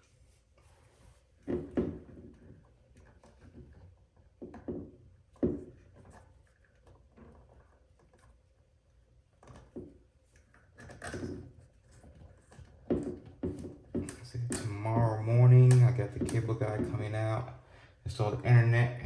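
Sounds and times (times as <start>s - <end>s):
hands handling wire connections: 9.4s - 17.4s
rustling and knocking: 11.0s - 17.4s.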